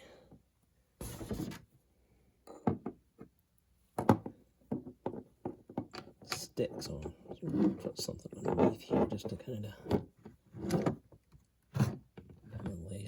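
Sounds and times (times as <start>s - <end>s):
plastic scraping on work surface: 1.0s - 1.7s, 7.3s - 11.1s.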